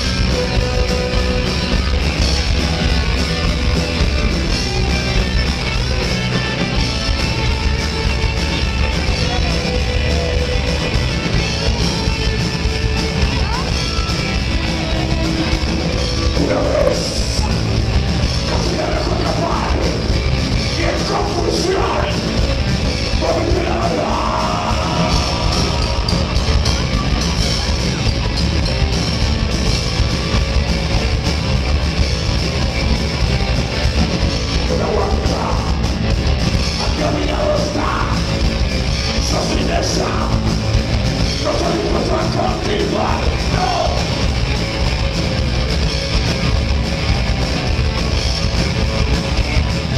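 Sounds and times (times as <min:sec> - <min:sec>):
heavy metal band playing live: 0:00.0 - 0:49.9
person singing: 0:23.1 - 0:27.1.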